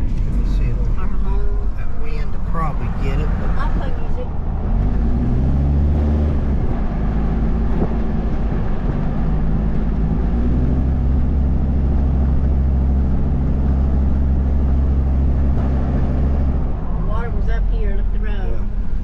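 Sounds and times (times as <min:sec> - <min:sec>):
car engine and road noise: 0:00.0 - 0:19.0.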